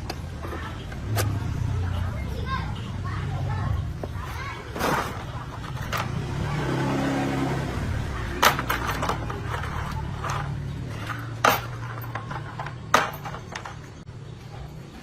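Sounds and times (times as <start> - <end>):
sharp knocks or clanks: 8.3 - 14.0.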